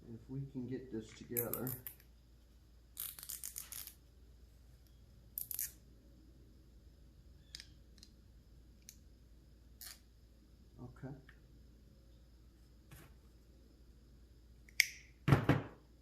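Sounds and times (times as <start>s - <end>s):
parts scraping and clicking: 3.0s - 4.0s.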